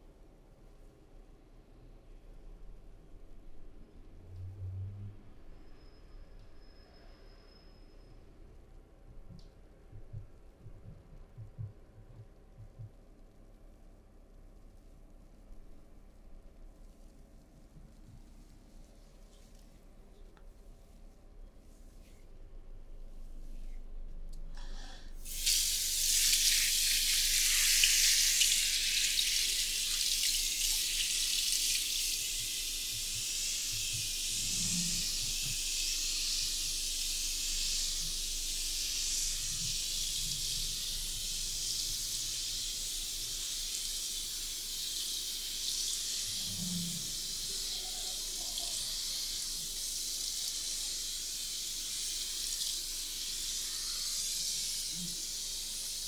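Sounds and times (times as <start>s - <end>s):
water running into basin: 25.2s - 56.0s.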